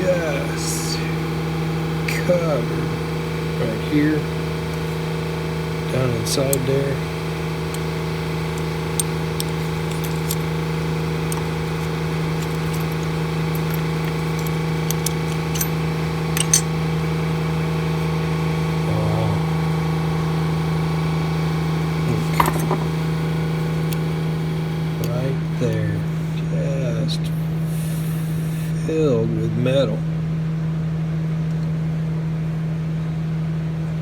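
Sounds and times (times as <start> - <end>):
electrical hum: 0.0 - 34.0
small metallic clicks: 8.5 - 16.8.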